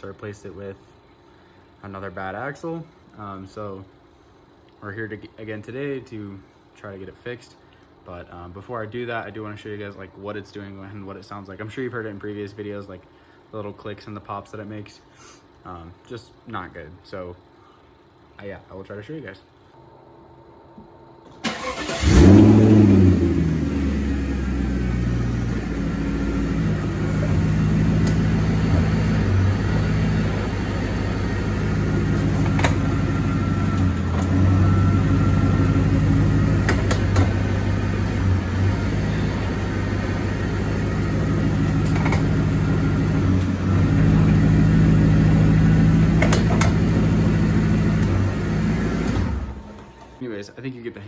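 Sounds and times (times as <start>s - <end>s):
car engine starting and running: 20.6s - 50.2s
sharp axle clicks: 25.9s - 39.8s, 41.5s - 44.4s, 46.0s - 47.0s.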